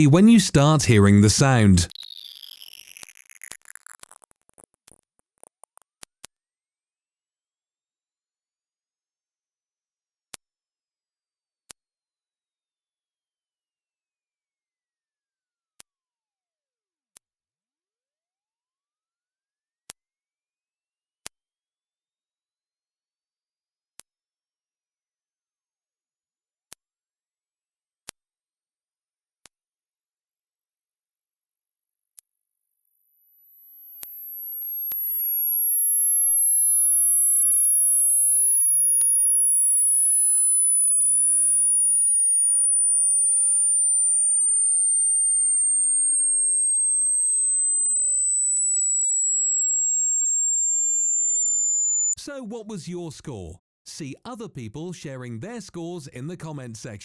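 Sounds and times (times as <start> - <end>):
high-pitched sine tone: 1.9 - 52.2.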